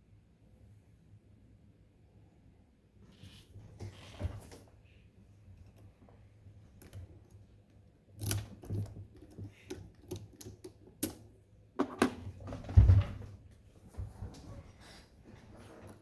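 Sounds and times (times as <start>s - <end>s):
lock picking metallic clicks: 8.2s - 11.3s.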